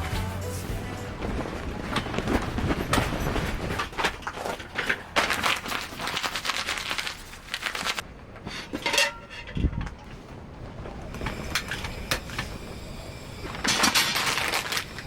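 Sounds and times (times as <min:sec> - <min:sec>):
rustling and scraping handling noises: 0:00.8 - 0:12.6.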